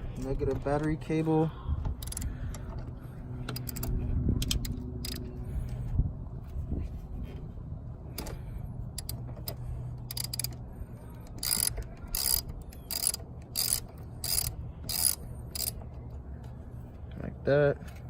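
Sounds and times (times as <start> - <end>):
ratchet clicking: 2.0 - 2.3, 3.4 - 5.2, 8.1 - 16.0.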